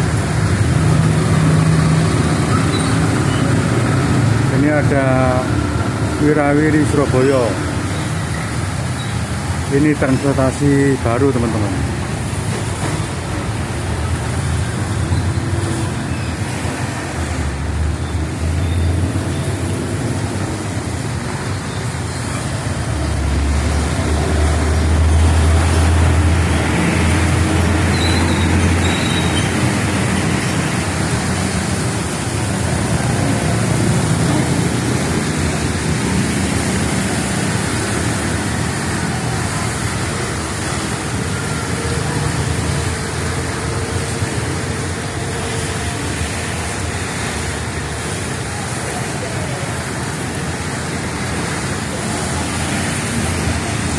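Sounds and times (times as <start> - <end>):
heavy rain: 0.0 - 53.9
traffic engine noise: 0.0 - 53.9
large vehicle engine drone: 11.0 - 53.9.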